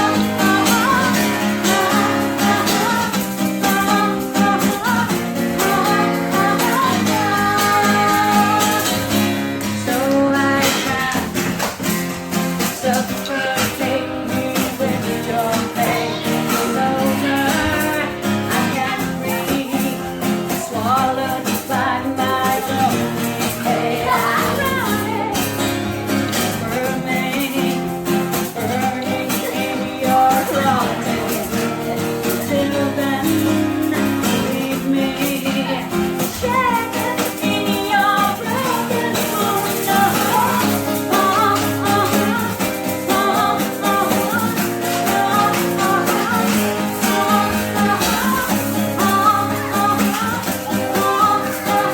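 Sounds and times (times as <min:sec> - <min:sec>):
acoustic guitar accompaniment: 0:00.0 - 0:51.9
woman singing: 0:00.0 - 0:51.9.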